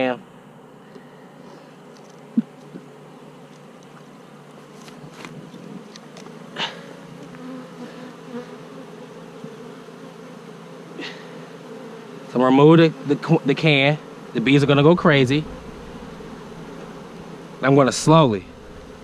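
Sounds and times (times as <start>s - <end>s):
honeybees buzzing: 0.0s - 19.0s.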